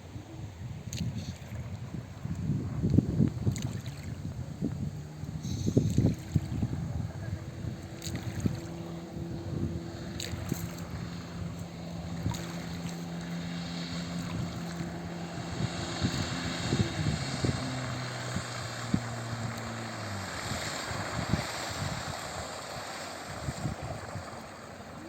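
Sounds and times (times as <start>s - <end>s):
motorboat engine running: 0.0s - 25.0s
wind and water hiss: 0.0s - 25.0s.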